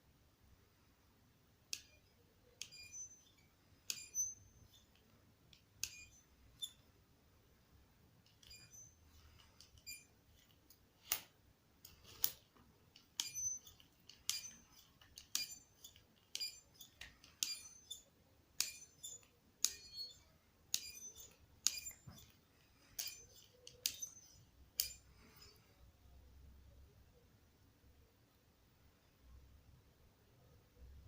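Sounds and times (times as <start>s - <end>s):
ratchet cable cutter clicking: 13.0s - 22.4s, 23.0s - 25.0s.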